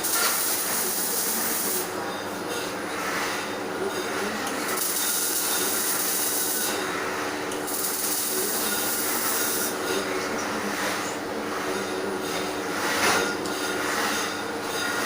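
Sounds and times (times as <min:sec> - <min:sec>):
welding arc crackling and hissing: 0:00.0 - 0:02.1, 0:04.3 - 0:09.9
steady hum: 0:00.0 - 0:15.0.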